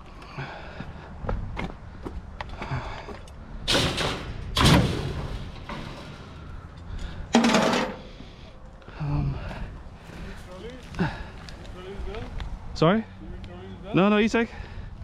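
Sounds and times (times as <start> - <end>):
heavy bangs of scrap: 3.6 - 8.2.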